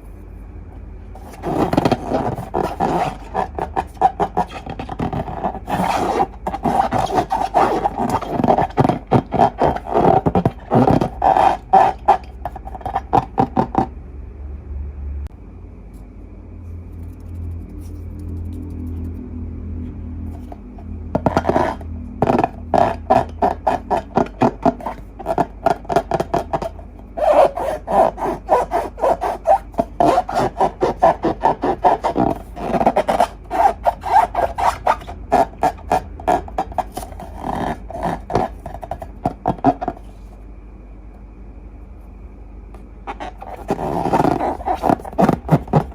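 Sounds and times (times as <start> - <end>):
hands squeaking rubber balloons: 1.2 - 13.9, 20.3 - 40.2, 43.0 - 45.9
slime squelching: 1.2 - 13.9, 20.3 - 40.1.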